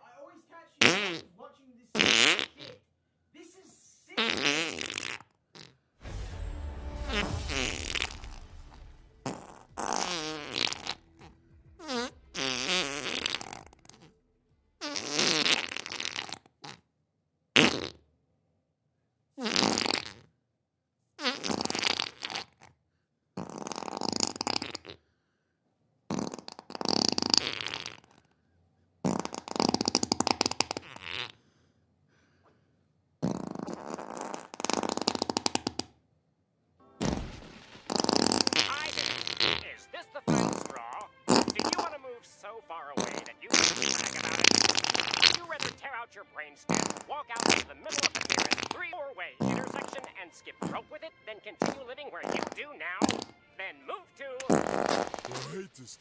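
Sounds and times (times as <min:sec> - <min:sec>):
wet fart sound effects: 0:00.8 - 0:02.8, 0:04.2 - 0:14.2, 0:14.8 - 0:16.9, 0:17.6 - 0:18.0, 0:19.4 - 0:20.4, 0:21.2 - 0:22.7, 0:23.4 - 0:25.0, 0:26.1 - 0:28.3, 0:29.0 - 0:31.4, 0:33.2 - 0:36.0, 0:37.0 - 0:42.0, 0:42.9 - 0:45.8, 0:46.6 - 0:48.8, 0:49.4 - 0:53.4, 0:54.4 - 0:55.9.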